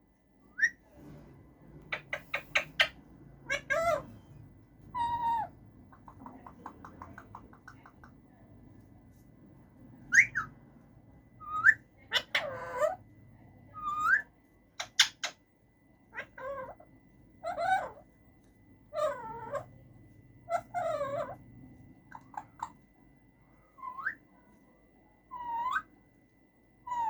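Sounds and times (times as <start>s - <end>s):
parakeet whistles: 0.4s - 0.8s, 10.1s - 10.6s, 23.7s - 24.2s
parakeet warbling calls: 1.9s - 4.3s, 5.0s - 5.6s, 11.4s - 13.0s, 16.1s - 16.8s, 18.9s - 19.7s, 20.5s - 21.4s.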